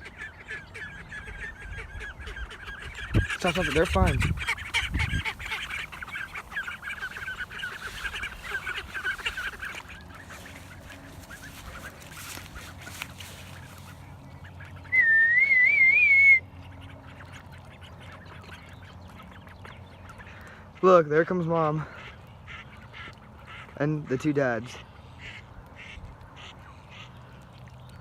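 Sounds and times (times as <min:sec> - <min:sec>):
ducklings peeping: 0:00.0 - 0:28.0
loud wavering whistle: 0:14.9 - 0:16.5.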